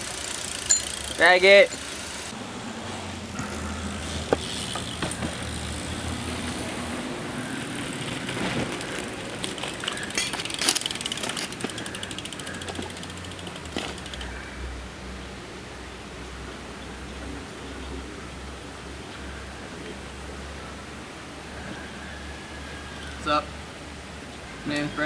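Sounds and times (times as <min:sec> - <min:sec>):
freewheel hub clicking: 0:00.0 - 0:02.3, 0:07.6 - 0:14.6
bike handling knocks: 0:03.4 - 0:05.6.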